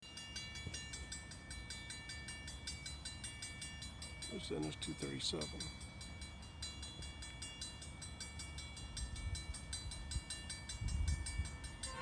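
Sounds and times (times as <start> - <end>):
crossing bell ringing: 0.0 - 12.0.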